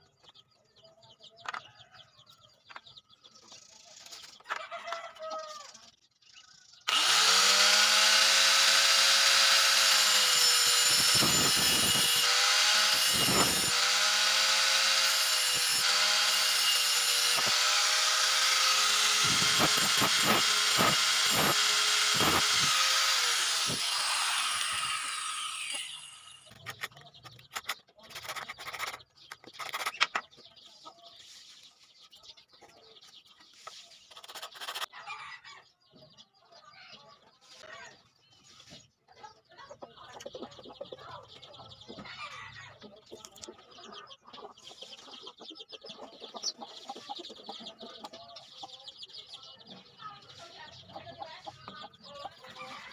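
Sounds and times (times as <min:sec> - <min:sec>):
electric power drill running: 0:06.9 - 0:26.5.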